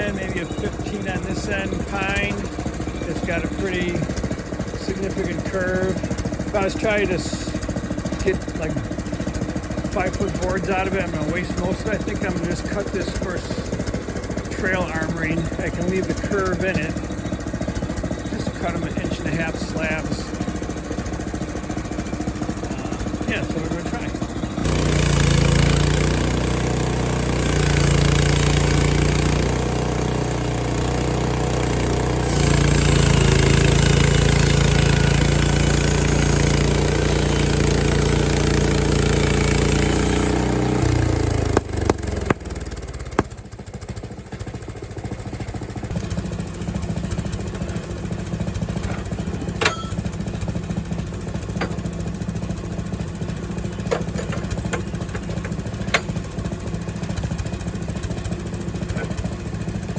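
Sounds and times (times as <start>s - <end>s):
gas engine running: 0.0s - 59.9s
saw blade cutting log: 24.6s - 43.4s
sharp clicks and knocks: 41.3s - 43.4s, 51.5s - 51.9s, 53.8s - 56.2s.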